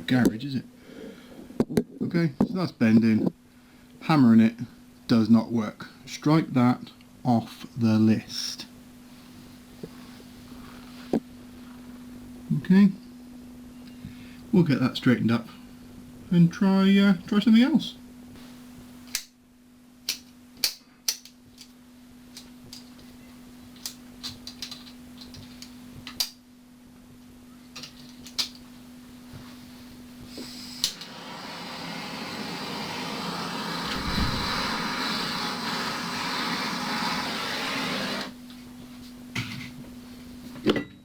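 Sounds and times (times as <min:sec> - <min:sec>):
steady low hum: 0:00.0 - 0:41.0
rushing mechanical noise: 0:30.4 - 0:38.3.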